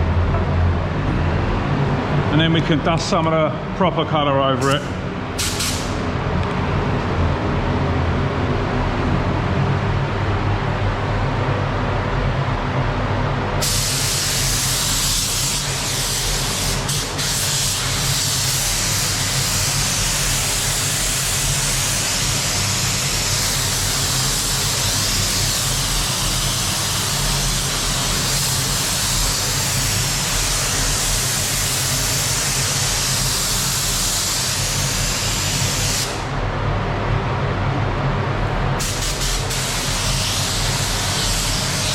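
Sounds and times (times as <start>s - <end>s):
paint spray gun hissing: 5.4s - 6.0s.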